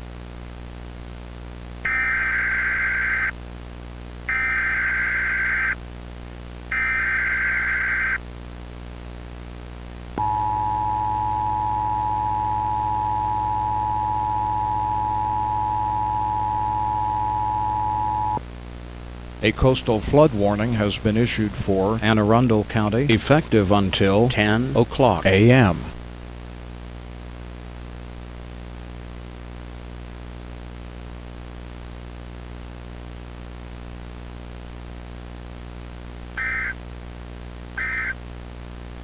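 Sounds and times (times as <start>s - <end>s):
buzzing digital data bursts: 6.8s - 8.2s, 36.4s - 36.8s, 37.8s - 38.2s
low steady hum: 10.1s - 18.4s
two-note attention tone: 10.2s - 18.4s.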